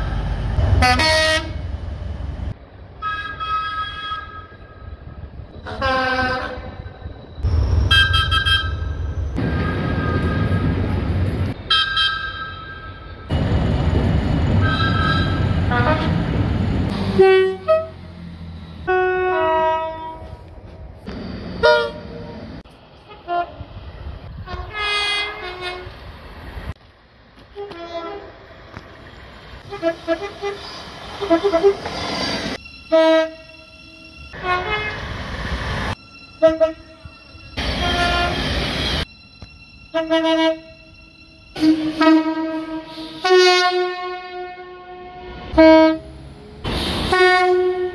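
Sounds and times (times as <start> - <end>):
passing train rumble: 0.0 - 47.9
train horn blasts: 0.8 - 1.7, 5.6 - 6.9, 14.6 - 16.2, 17.1 - 18.0, 18.8 - 20.4, 24.4 - 25.9, 32.9 - 35.1, 36.4 - 39.1, 39.9 - 40.8, 41.6 - 46.1, 47.1 - 47.9.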